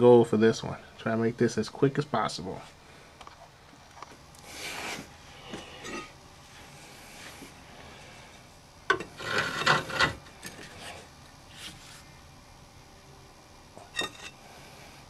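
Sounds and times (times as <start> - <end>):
tools scraping metal parts: 8.9 - 10.6, 13.9 - 14.4.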